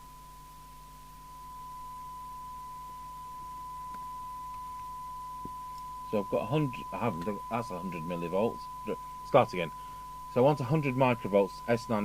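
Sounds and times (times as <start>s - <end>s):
faint mains hum: 0.0s - 12.0s
steady test tone: 0.0s - 12.0s.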